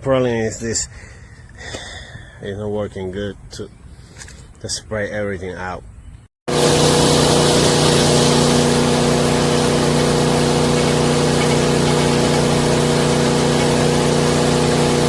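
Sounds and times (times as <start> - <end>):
wood chipper engine running: 6.5 - 15.0.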